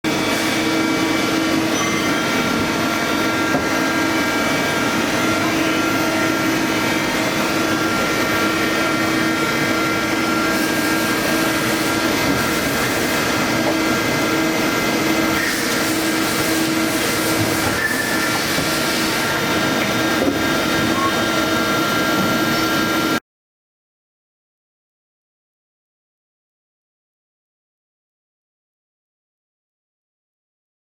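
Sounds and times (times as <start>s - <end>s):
lathe machine hum: 0.1s - 23.2s.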